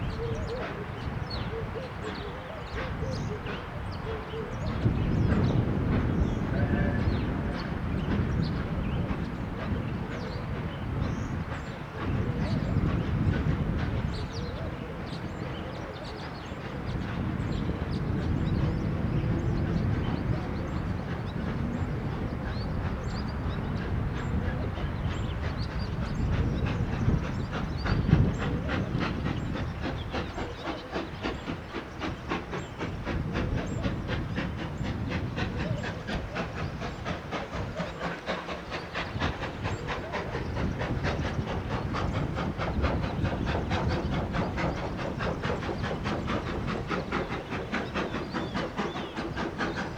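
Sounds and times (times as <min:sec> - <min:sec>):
steam hissing: 0:19.4 - 0:49.9
train wheels clicking over rail joints: 0:25.0 - 0:49.9.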